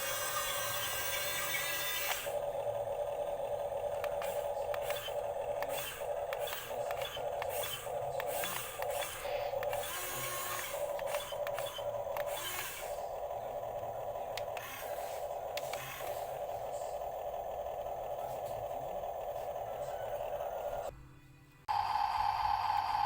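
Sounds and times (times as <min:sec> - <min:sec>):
small electric motors whining: 0:00.0 - 0:20.9
plastic clicks and scraping: 0:03.9 - 0:12.9, 0:14.3 - 0:16.5.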